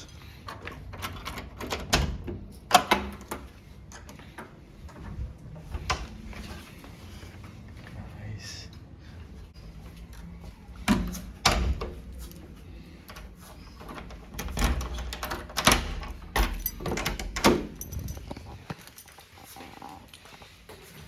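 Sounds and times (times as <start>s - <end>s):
handling noise: 9.8s - 21.0s.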